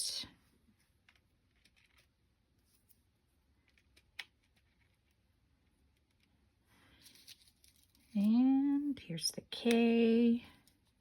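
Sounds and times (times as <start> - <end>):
soft paper rustle: 0.5 - 8.4.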